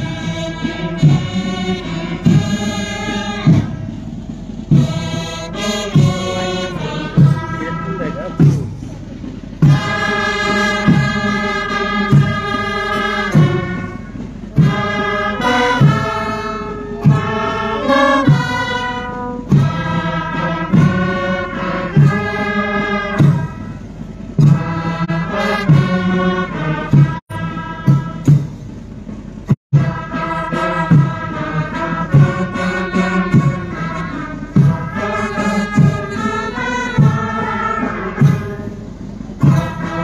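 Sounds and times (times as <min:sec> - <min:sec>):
drum beat: 0:00.0 - 0:40.0
group of voices singing: 0:09.6 - 0:23.7, 0:29.8 - 0:38.7.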